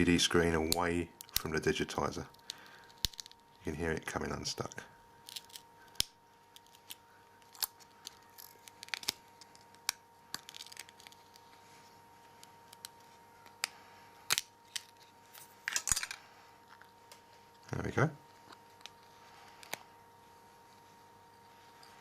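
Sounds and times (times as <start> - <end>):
sticky tape crackling and snapping: 0.6 - 3.7, 4.6 - 15.6, 18.3 - 19.9.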